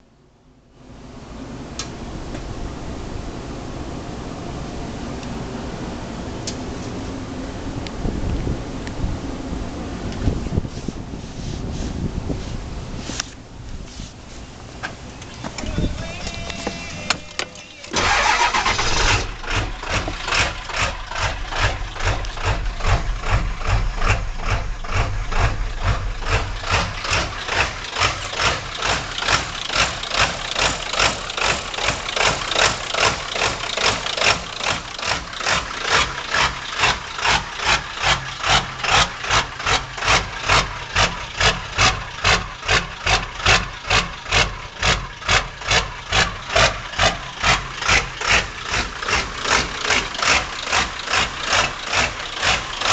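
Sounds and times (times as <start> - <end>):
diesel engine idling roughly: 17.9 - 52.9.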